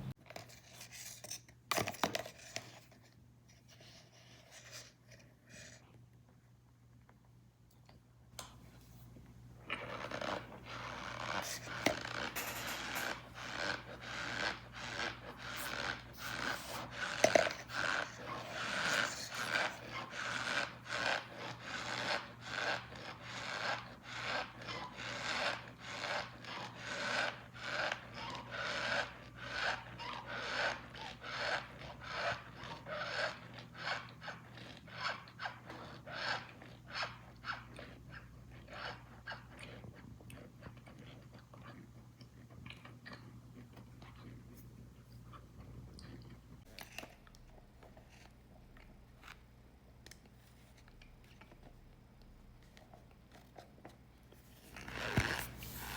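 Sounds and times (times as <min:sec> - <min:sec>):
cornstarch squeaky crunch: 0:09.7 - 0:41.8.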